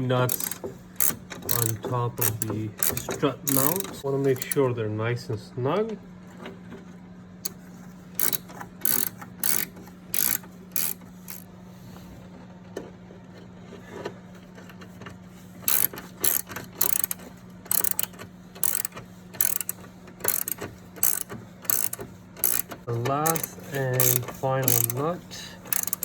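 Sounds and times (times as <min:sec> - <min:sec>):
socket ratchet clicking: 0:00.3 - 0:04.6, 0:08.2 - 0:11.5, 0:15.7 - 0:25.0, 0:25.7 - 0:26.0.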